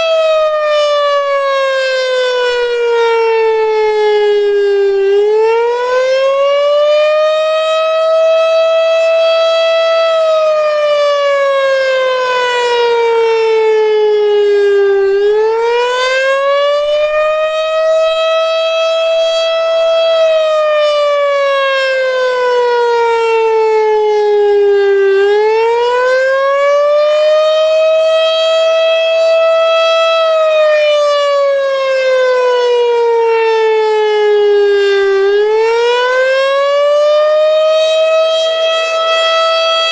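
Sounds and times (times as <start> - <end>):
outdoor warning siren wailing: 0.0 - 39.9.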